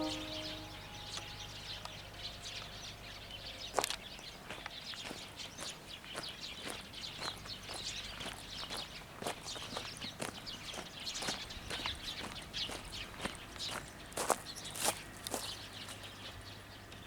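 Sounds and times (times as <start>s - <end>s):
loudspeaker chime echo: 0.0s - 1.4s
birds chirping: 0.0s - 14.8s.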